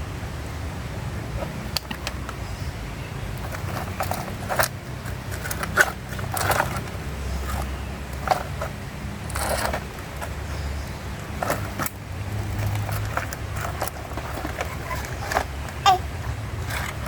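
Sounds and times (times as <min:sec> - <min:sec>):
plastic toy clicks and scrapes: 0:03.4 - 0:10.4, 0:11.3 - 0:16.0, 0:16.6 - 0:17.0.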